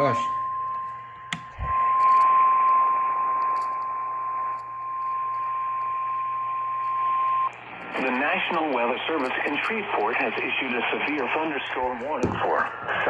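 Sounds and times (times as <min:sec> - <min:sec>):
steady high warning tone: 0:00.0 - 0:09.8
radio hiss: 0:07.6 - 0:13.0.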